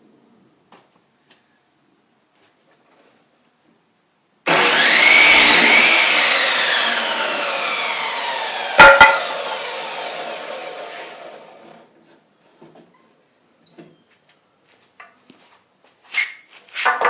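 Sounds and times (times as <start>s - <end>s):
power saw cutting lumber: 4.5s - 11.9s
sharp knocks: 8.8s - 9.4s.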